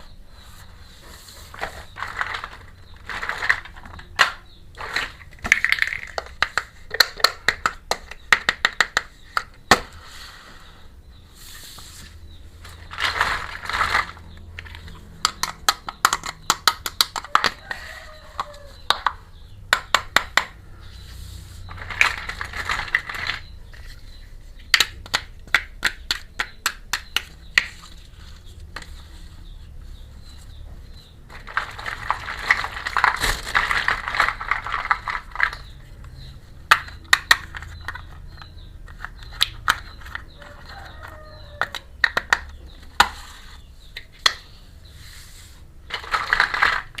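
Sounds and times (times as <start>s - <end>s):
plastic toy pieces clicking: 1.6s - 9.6s, 12.9s - 17.7s, 21.8s - 23.9s, 31.3s - 40.6s, 41.3s - 43.2s, 45.9s - 47.0s
packaging crinkling: 31.3s - 35.7s.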